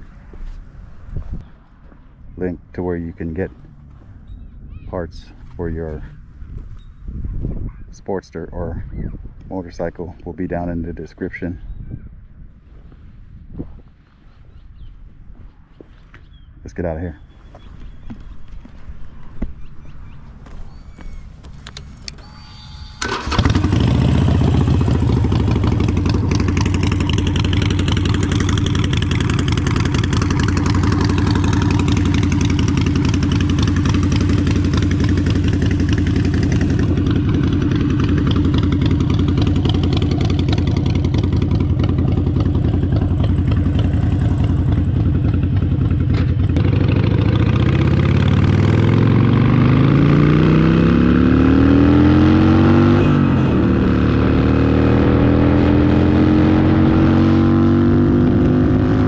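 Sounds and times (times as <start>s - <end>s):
motorcycle engine idling and revving: 23.0s - 59.0s.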